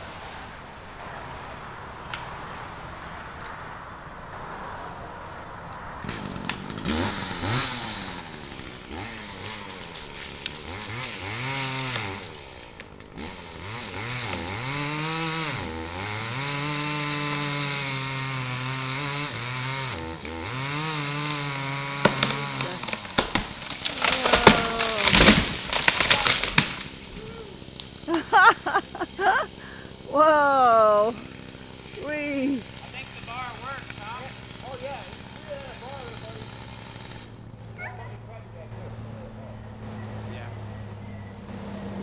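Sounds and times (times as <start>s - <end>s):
wood cracking: 6.0s - 15.2s, 19.7s - 29.4s
chainsaw cutting wood: 6.0s - 37.8s.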